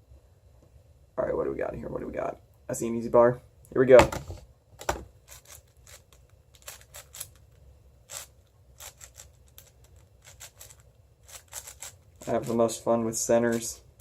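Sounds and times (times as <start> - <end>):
puzzle cube layers clicking: 8.1 - 12.6.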